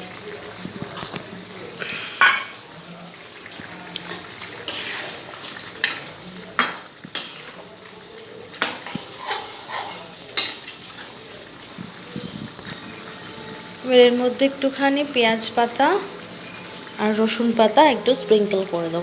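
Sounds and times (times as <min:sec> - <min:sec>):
food sizzling: 0:00.0 - 0:19.0
spatula knocking and scraping pan: 0:08.6 - 0:10.6.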